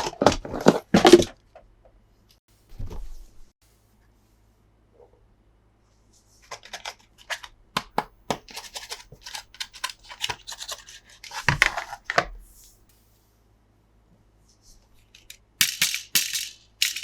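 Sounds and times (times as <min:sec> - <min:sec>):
toy packaging clicks and crinkles: 0:06.4 - 0:07.5, 0:08.4 - 0:12.0.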